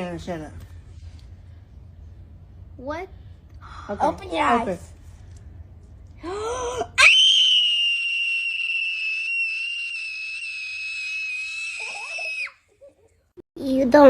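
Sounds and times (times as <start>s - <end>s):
girl screaming: 7.0s - 12.6s.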